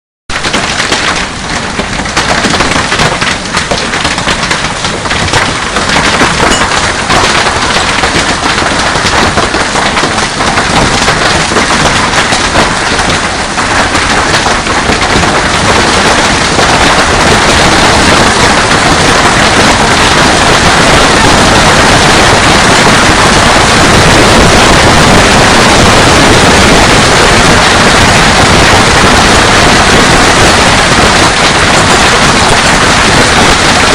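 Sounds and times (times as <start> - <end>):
hail striking hard surfaces: 0.3 - 33.9.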